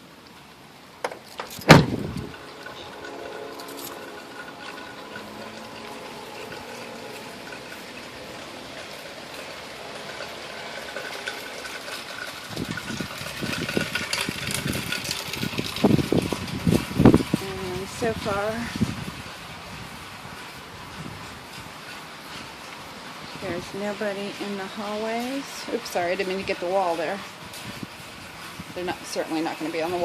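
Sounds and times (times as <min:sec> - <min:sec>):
rain falling: 0:00.0 - 0:30.0
loud thump: 0:01.7 - 0:02.2.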